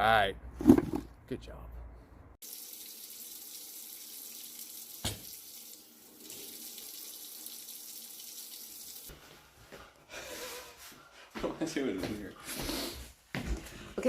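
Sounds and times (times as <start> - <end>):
tap water running into sink: 2.4 - 9.1.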